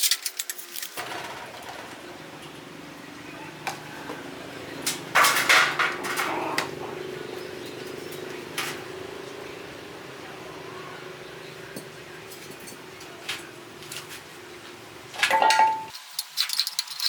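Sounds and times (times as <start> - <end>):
metal parts clinking: 0.0 - 2.9, 3.6 - 6.8, 15.2 - 17.0
machine humming: 1.0 - 15.9.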